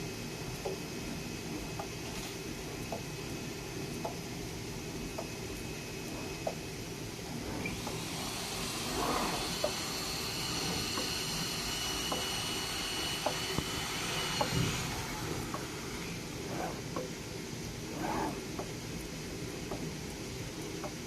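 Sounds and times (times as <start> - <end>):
cutting machine hiss and whine: 5.4 - 18.5.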